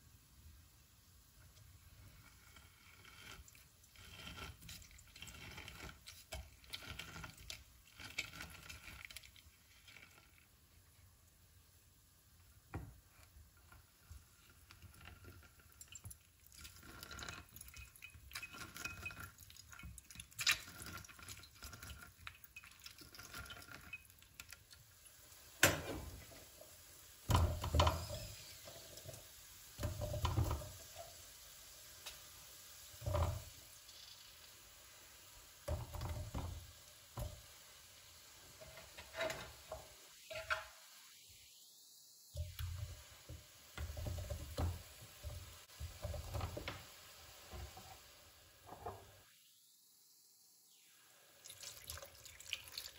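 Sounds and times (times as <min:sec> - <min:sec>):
dishes clinking and rattling: 0:15.2 - 0:24.5.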